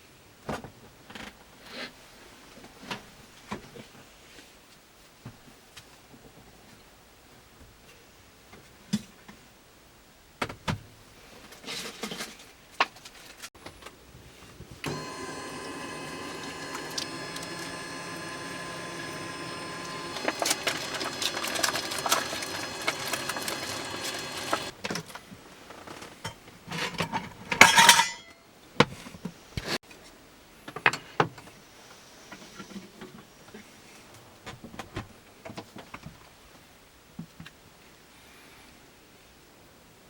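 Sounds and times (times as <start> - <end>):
small motor running: 14.8 - 24.7.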